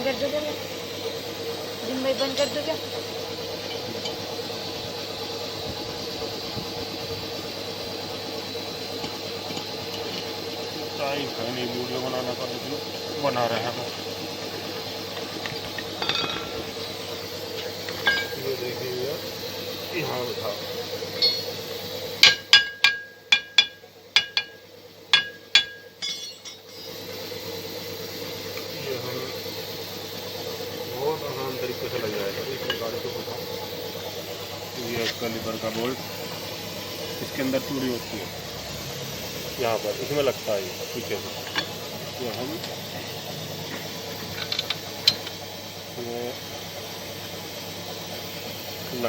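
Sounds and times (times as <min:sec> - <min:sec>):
machine humming: 0:00.0 - 0:49.0
hammer blows on metal: 0:22.2 - 0:24.6.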